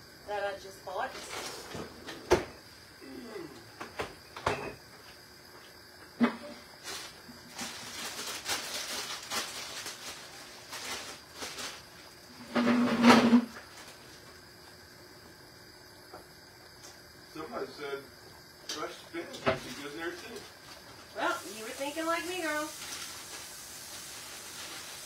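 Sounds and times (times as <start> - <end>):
rustling: 6.8 - 14.0, 21.6 - 25.0.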